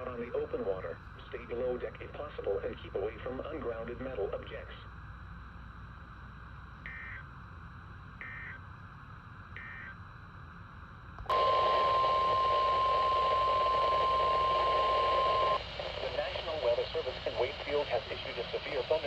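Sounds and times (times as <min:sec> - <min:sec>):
steady warning alarm tone: 0:09.6 - 0:10.0, 0:11.3 - 0:15.6
digital data tone bursts: 0:11.3 - 0:15.6
radio static: 0:11.3 - 0:19.0.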